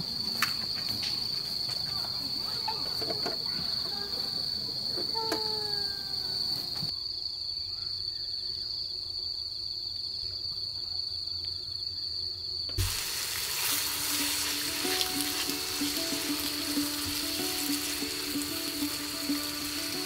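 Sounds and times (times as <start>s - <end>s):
crickets chirring: 0.0s - 20.0s
food sizzling in a pan: 12.8s - 20.0s
soft background music: 14.0s - 20.0s.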